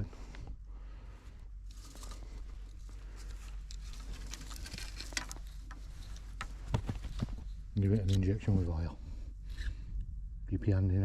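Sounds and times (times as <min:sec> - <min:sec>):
crinkling and rustling with clicks: 0:01.6 - 0:08.6.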